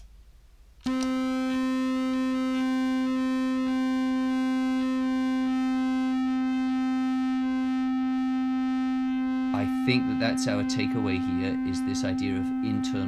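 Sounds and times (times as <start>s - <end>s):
buzzy clarinet drone: 0.9s - 13.0s.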